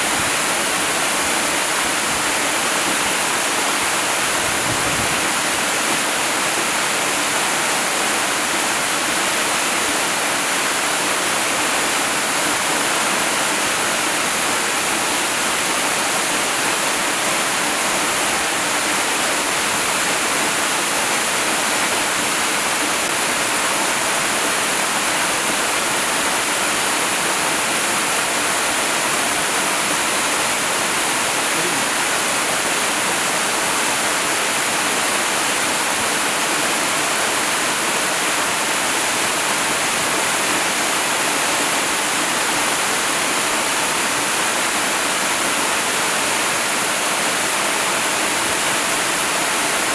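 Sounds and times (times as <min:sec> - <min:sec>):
waterfall hissing: 0:00.0 - 0:49.9.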